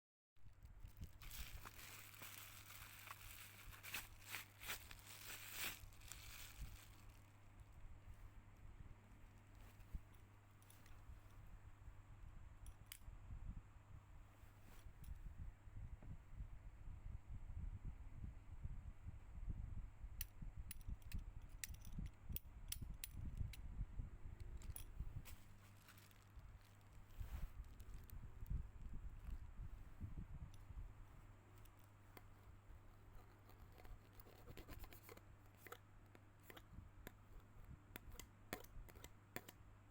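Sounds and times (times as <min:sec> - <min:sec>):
low steady hum: 0:00.4 - 0:39.9
hands rustling small objects: 0:00.5 - 0:07.3, 0:24.6 - 0:28.2
light sharp clicks and taps: 0:34.8 - 0:39.6.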